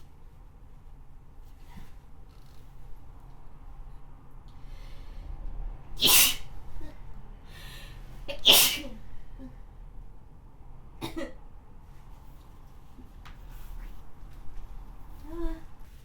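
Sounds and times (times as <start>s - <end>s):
person sneezing wetly: 6.0s - 6.4s, 8.3s - 9.0s.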